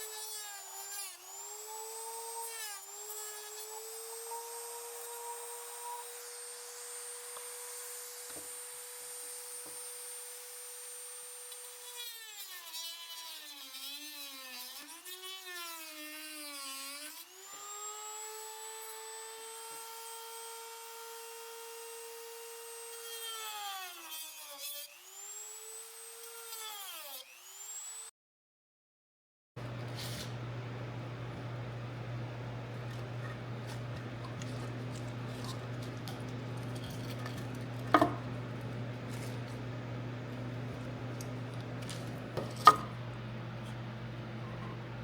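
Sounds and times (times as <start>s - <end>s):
power tool motor whining: 29.6s - 45.0s.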